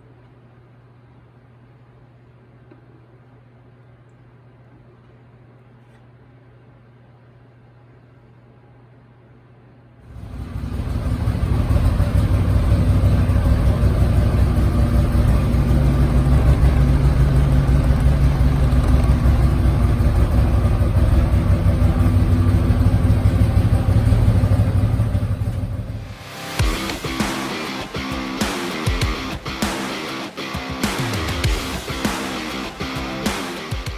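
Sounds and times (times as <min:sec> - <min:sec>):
v-twin engine running: 0:10.1 - 0:25.9.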